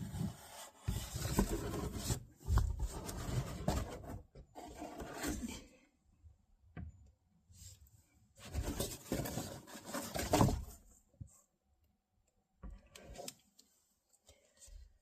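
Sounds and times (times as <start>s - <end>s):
handling rustling and scraping: 0.0s - 5.8s, 7.6s - 11.0s.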